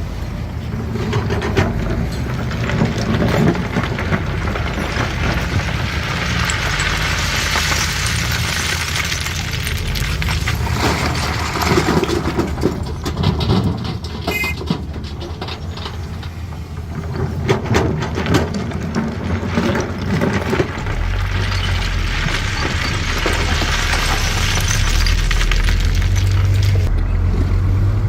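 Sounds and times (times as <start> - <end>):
excavator diesel engine running: 0.0 - 28.0
stone knocking and clattering: 1.7 - 14.9.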